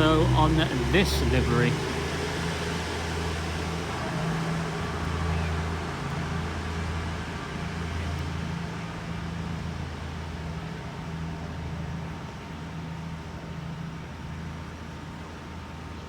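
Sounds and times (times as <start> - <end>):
station background noise: 0.0 - 2.1
train engine humming: 0.0 - 10.4.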